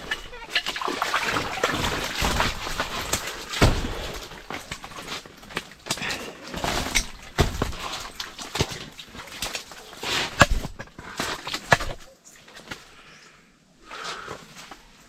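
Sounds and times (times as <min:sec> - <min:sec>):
handling knocks and rustling: 0:00.0 - 0:12.9
heavier thumps: 0:02.1 - 0:04.9.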